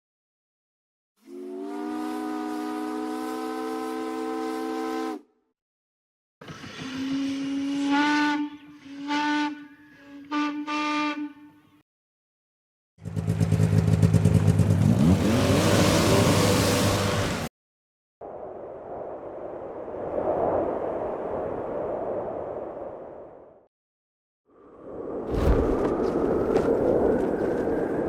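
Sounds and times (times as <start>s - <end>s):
steam whistle blasts: 1.2s - 5.3s, 6.9s - 11.6s.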